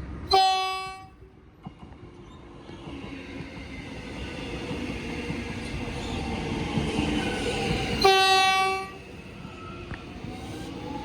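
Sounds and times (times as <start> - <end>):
low train horn blast: 0.3 - 1.2, 8.0 - 9.0
electric train running past: 1.1 - 11.0.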